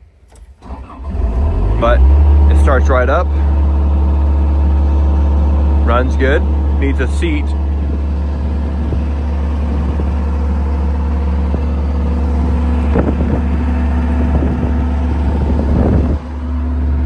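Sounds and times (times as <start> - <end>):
excavator diesel engine running: 0.6 - 17.0.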